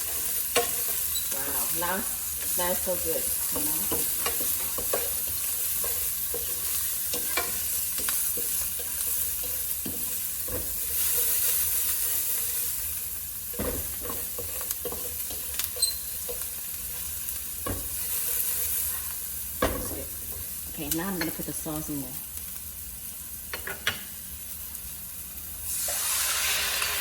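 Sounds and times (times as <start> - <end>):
garlic sizzling in oil: 0.0 - 27.0
utensil scraping pan: 3.4 - 12.5.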